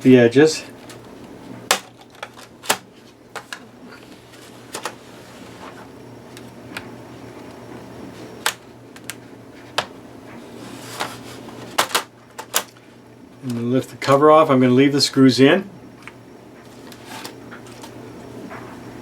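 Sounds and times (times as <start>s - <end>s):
plastic clips snapping loose: 11.8s - 12.8s.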